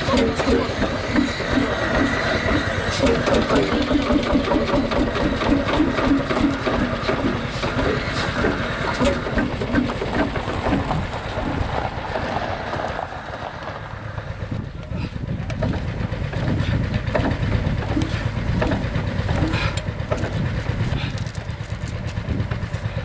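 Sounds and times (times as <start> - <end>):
single-cylinder engine popping: 0.0 - 23.0.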